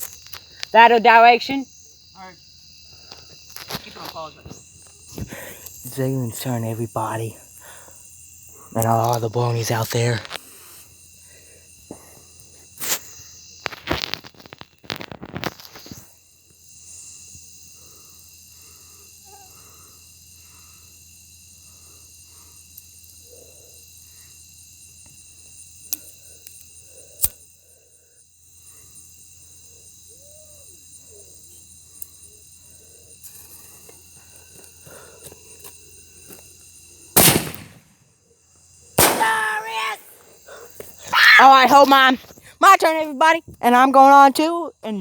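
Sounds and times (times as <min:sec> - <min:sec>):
firecrackers going off: 0:37.2 - 0:37.9, 0:39.0 - 0:40.2.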